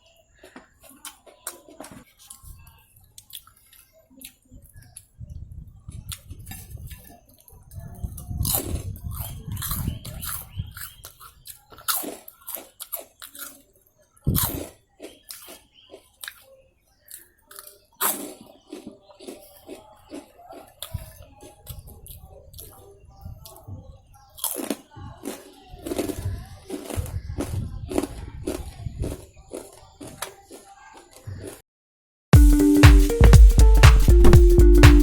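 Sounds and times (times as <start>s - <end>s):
crunchy chewing: 0.0s - 5.2s, 5.8s - 31.6s
wet mouth noises: 17.1s - 22.7s.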